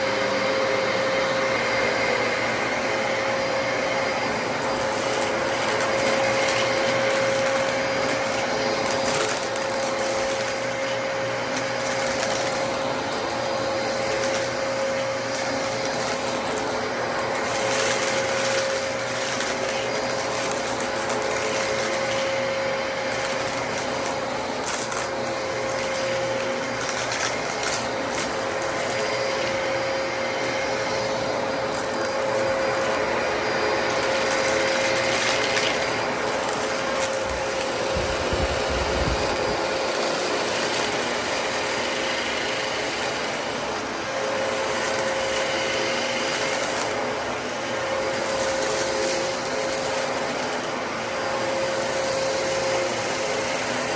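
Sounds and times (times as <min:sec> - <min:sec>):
vacuum cleaner running: 0:00.0 - 0:53.9
sharp clicks and crackles: 0:23.1 - 0:29.6.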